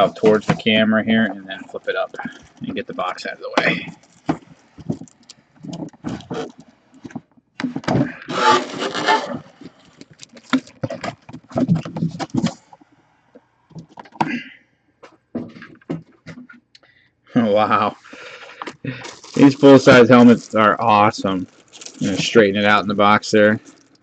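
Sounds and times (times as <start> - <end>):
plastic packaging rustling: 0.0 - 7.2, 8.1 - 12.7, 18.2 - 24.0.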